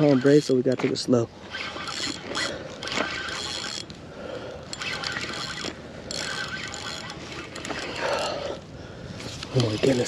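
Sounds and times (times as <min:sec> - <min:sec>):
fishing reel whirring: 0:00.0 - 0:00.8, 0:01.4 - 0:08.3.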